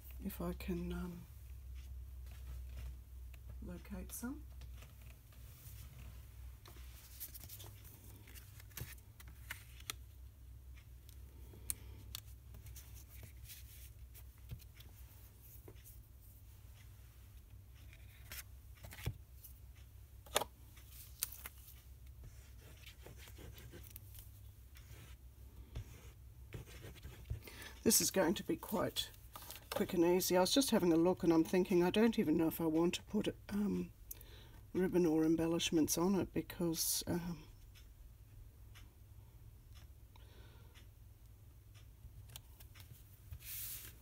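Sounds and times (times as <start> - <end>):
low steady hum: 0.0 - 44.0.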